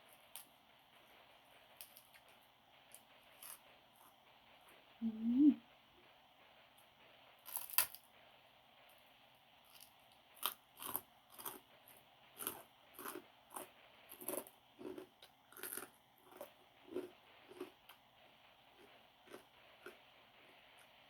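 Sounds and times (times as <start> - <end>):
person chewing crunchy food: 2.9 - 4.2, 7.4 - 8.0, 9.6 - 21.0.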